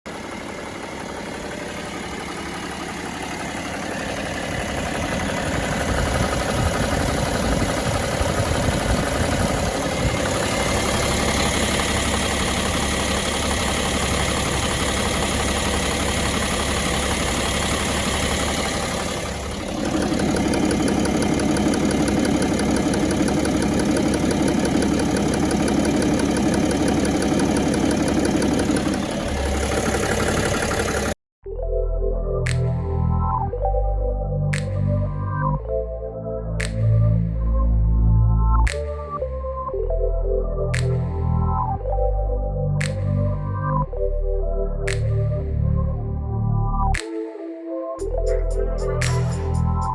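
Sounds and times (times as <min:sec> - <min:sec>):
diesel engine running with knock: 0:00.1 - 0:31.2.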